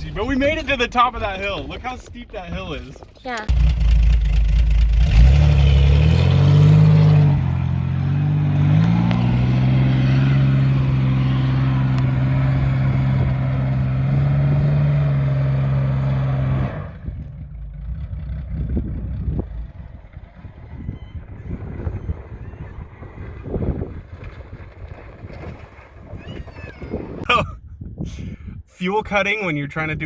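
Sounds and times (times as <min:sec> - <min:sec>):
car engine running under load: 0:03.4 - 0:24.9.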